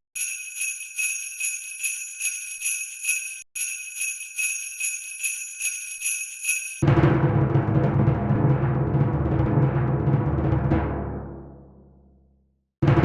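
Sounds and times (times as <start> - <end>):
jingle bells shaken: 0.0 - 6.8.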